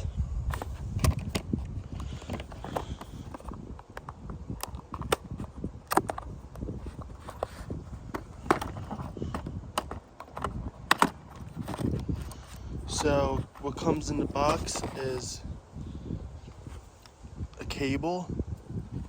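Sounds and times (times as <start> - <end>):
cardboard box clicks and knocks: 2.2 - 15.2.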